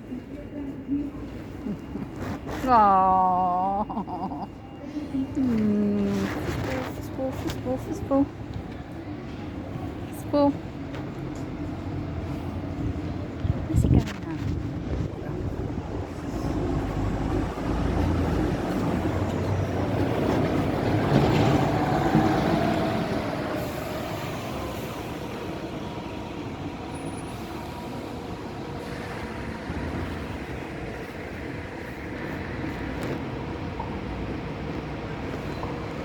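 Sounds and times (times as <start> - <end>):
traffic hum: 0.0 - 36.0
vehicle passing: 16.0 - 25.3.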